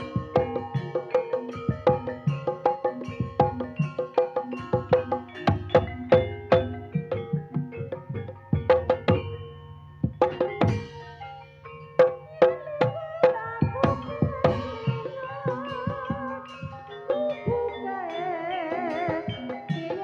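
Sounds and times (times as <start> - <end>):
hand drum strokes: 0.0 - 9.4, 10.0 - 11.4
wavering melody line: 0.0 - 20.0.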